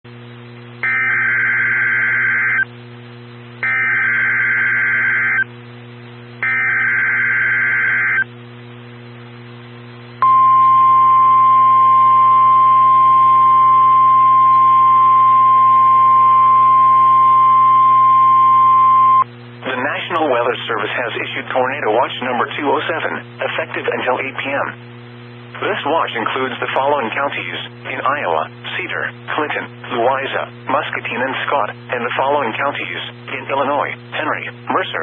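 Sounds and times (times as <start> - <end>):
steady single-pitch alert tone: 0.8 - 2.7, 3.6 - 5.5, 6.4 - 8.4, 10.2 - 19.3
warbling buzzy data tones: 0.8 - 2.7, 3.6 - 5.5, 6.4 - 8.3
radio hiss: 19.6 - 24.9, 25.5 - 35.0.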